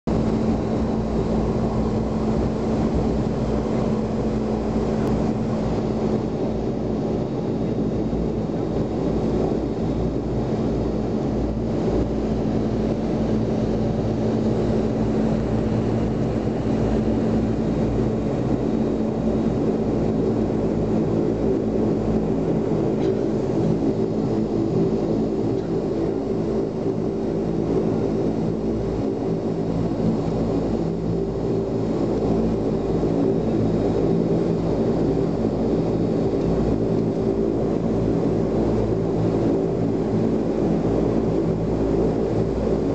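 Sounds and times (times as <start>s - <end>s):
turboprop engines droning: 0.1s - 42.9s.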